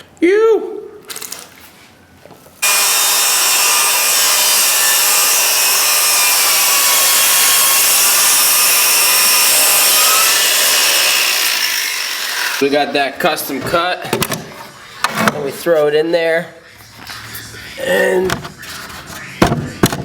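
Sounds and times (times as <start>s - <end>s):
power saw cutting wood: 2.6s - 12.8s.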